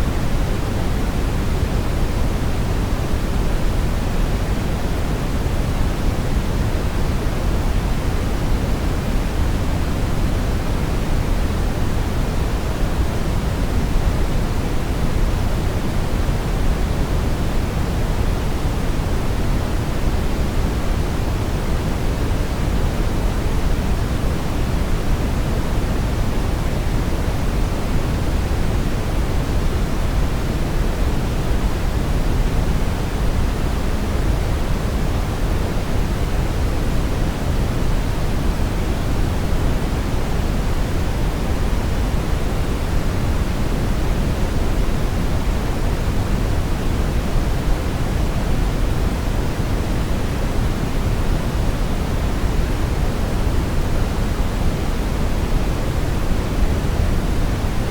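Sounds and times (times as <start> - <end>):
brown noise hiss: 0.0 - 57.9.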